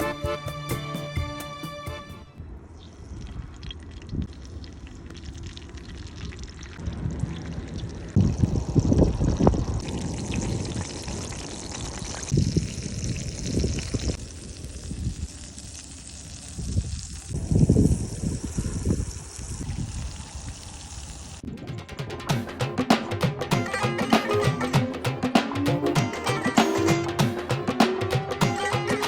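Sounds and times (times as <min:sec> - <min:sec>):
water pouring and trickling: 0:02.9 - 0:21.5.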